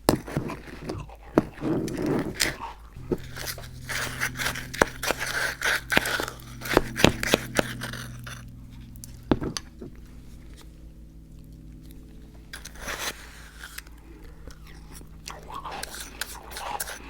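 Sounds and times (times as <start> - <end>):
crunching and chewing cookies: 0.0 - 8.4, 11.9 - 17.0.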